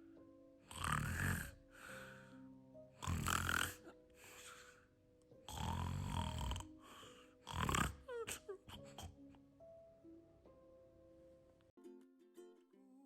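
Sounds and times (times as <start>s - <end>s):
quiet background music: 0.0s - 13.0s
person snoring: 0.7s - 2.4s, 3.0s - 4.7s, 5.5s - 9.2s.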